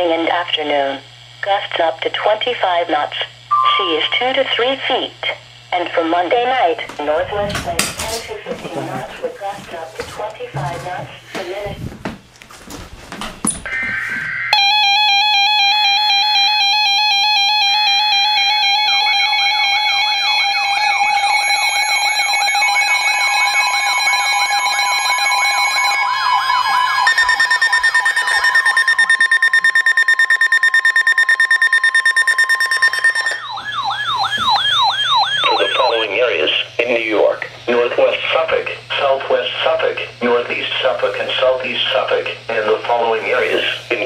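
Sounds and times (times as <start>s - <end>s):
siren tone sweeping up and down: 3.5s - 4.3s, 13.7s - 36.1s
beeping alarm tone: 3.5s - 4.4s, 13.6s - 36.2s
steady electronic alarm tone: 3.5s - 4.5s, 13.6s - 36.7s.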